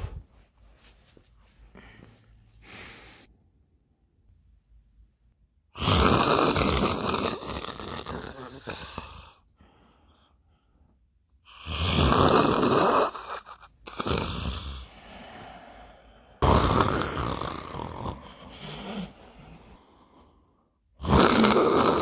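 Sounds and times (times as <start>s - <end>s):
person comic snoring: 5.8s - 9.4s, 11.5s - 20.3s, 21.0s - 22.0s.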